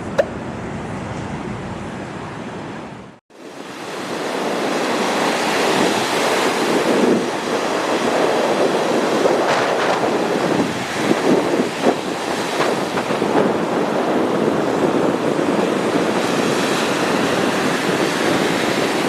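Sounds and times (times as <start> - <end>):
wind on microphone: 0.0 - 19.0
waves surging onto beach: 3.3 - 19.0.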